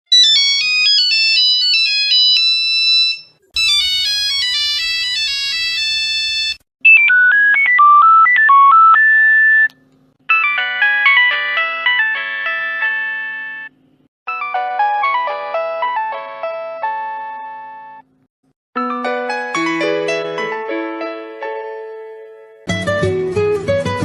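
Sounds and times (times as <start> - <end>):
mobile phone ringtones: 0.2 - 9.7, 10.3 - 13.7.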